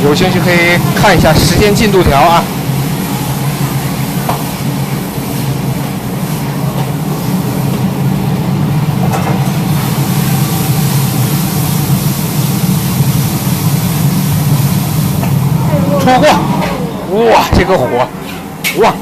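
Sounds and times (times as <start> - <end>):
stove burner roaring: 0.0 - 19.0.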